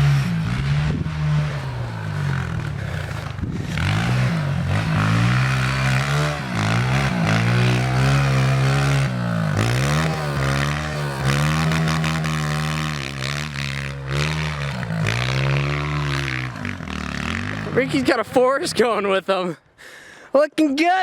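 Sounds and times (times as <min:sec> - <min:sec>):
dirt bike engine revving: 0:00.0 - 0:19.1.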